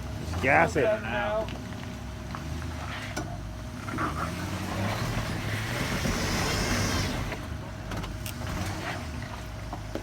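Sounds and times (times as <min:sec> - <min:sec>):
car engine revving: 0:03.6 - 0:07.6.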